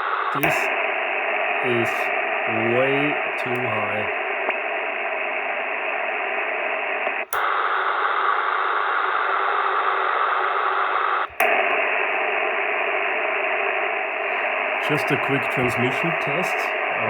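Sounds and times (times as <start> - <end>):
radio static hiss: 0.0 - 17.0
radio switch click: 0.4 - 0.8, 7.1 - 7.6, 11.2 - 12.2.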